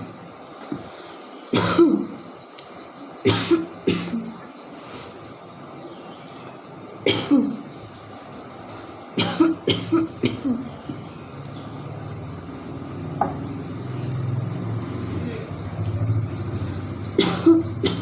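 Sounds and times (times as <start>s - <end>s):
woman coughing: 1.6s - 2.1s, 3.3s - 4.3s, 7.1s - 7.6s, 9.2s - 10.7s, 17.2s - 18.0s.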